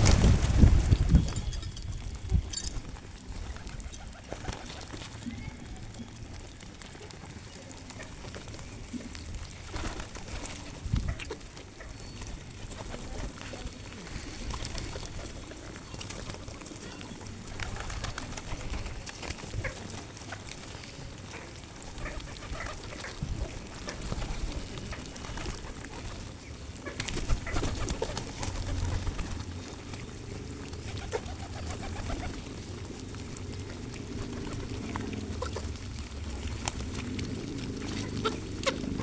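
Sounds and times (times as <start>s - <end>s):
pigeons cooing: 12.6s - 39.0s.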